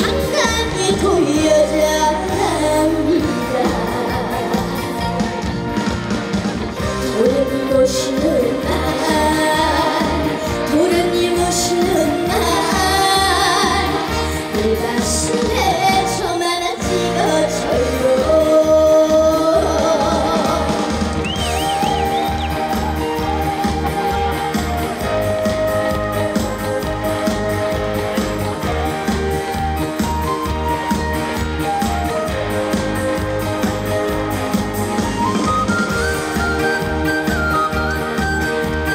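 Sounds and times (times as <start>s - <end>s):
woman singing: 0.0s - 5.7s, 6.8s - 23.4s
backing music with steady beat: 0.0s - 38.9s.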